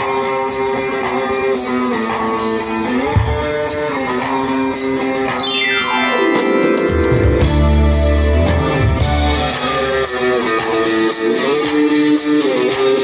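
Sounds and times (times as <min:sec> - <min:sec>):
electric guitar chords: 0:00.0 - 0:13.0
ticking beat: 0:05.3 - 0:09.8
falling pitch slide: 0:05.4 - 0:08.7.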